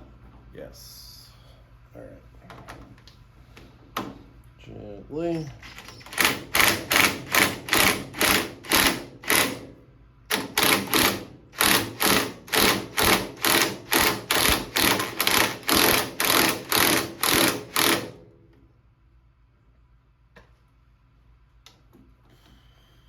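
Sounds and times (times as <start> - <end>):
hand ratchet clicking: 10.3 - 18.1.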